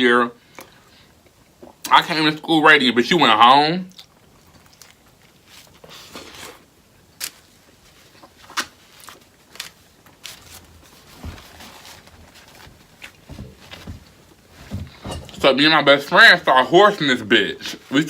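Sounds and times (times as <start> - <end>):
chewing: 3.9 - 6.7.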